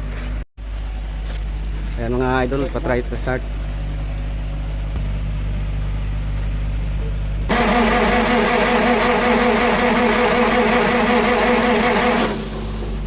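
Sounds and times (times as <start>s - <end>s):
low engine hum: 0.0s - 13.0s
diesel engine cranking: 7.5s - 13.0s.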